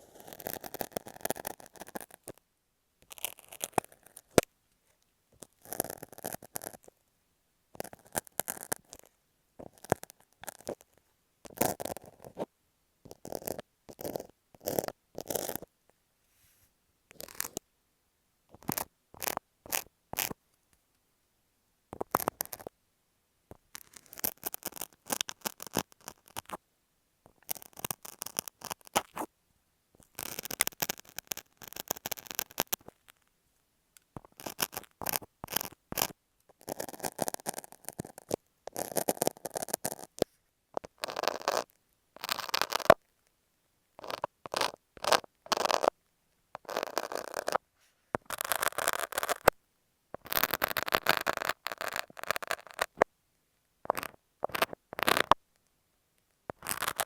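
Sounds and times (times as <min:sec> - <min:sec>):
close scratching and scraping: 0:03.0 - 0:06.9, 0:07.8 - 0:12.5, 0:13.1 - 0:15.7, 0:16.3 - 0:17.6, 0:22.0 - 0:22.7, 0:23.7 - 0:26.6, 0:27.3 - 0:29.3, 0:30.0 - 0:33.3, 0:34.2 - 0:43.1, 0:44.0 - 0:46.0, 0:46.6 - 0:49.6, 0:50.2 - 0:53.1, 0:53.9 - 0:55.4, 0:56.5 - 0:57.0.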